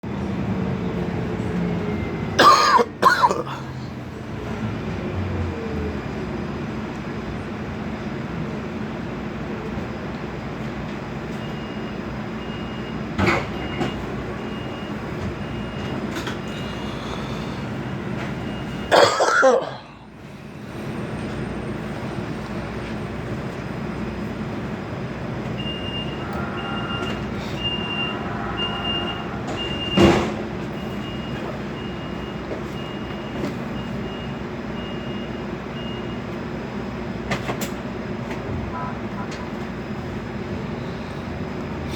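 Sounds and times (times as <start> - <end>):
moving vehicle rumble: 0.0 - 41.9
person coughing: 2.4 - 3.7, 18.9 - 20.0.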